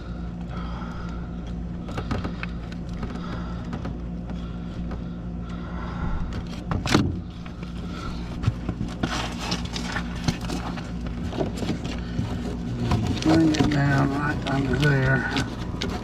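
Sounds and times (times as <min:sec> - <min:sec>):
steady low hum: 0:00.0 - 0:16.0
hose scraping and clicking: 0:08.4 - 0:16.0.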